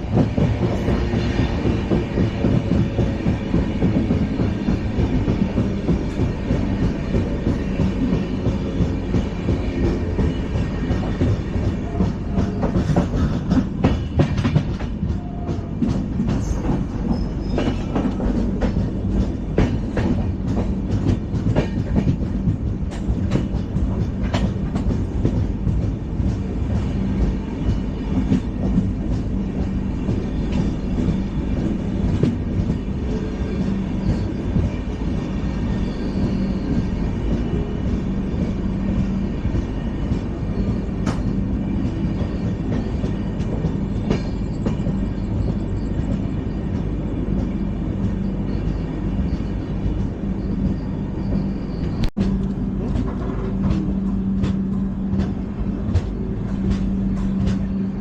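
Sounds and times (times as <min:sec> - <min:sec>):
train wheels rumbling on track: 0:00.0 - 0:58.0.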